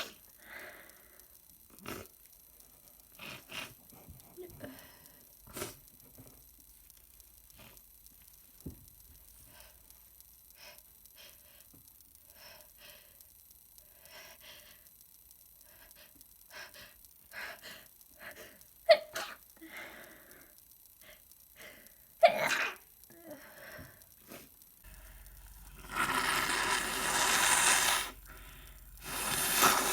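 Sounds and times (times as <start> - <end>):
person sneezing: 22.2 - 22.8
gasping in-breaths: 24.9 - 29.9.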